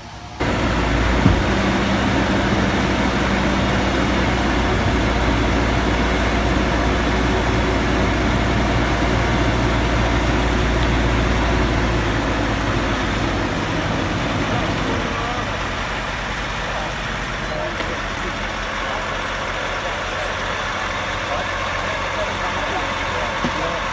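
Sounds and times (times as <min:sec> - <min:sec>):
heavy engine running: 0:00.0 - 0:23.9
brief knock: 0:01.2 - 0:01.8.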